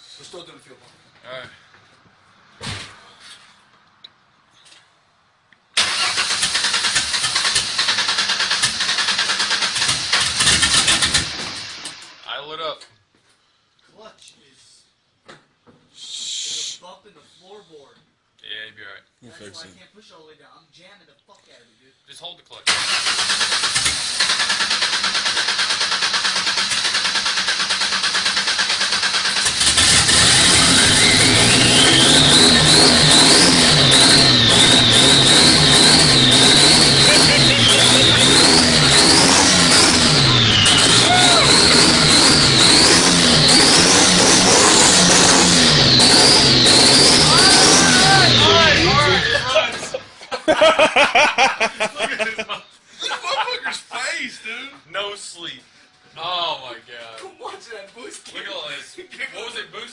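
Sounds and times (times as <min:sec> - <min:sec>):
car engine starting and running: 0:05.8 - 0:12.2, 0:22.7 - 0:50.1.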